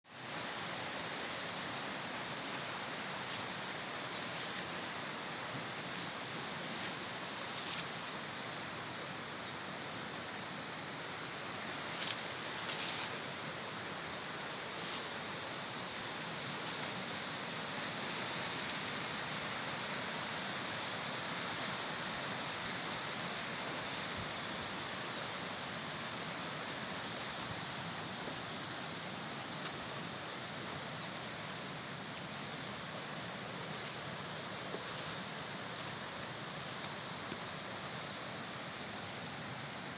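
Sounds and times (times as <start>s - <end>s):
outdoor ambient hiss: 0.0s - 39.9s.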